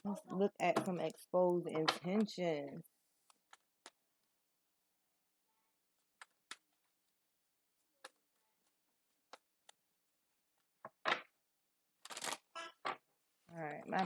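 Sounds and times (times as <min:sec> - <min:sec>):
cards being shuffled: 0:12.0 - 0:13.0.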